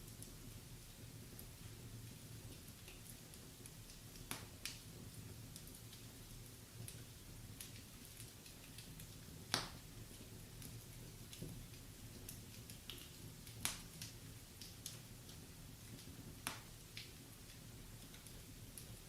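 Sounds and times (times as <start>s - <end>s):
wood fire crackling: 0.0s - 19.0s
sharp fire pops: 4.2s - 4.8s, 9.5s - 9.9s, 12.2s - 15.0s, 16.4s - 17.2s.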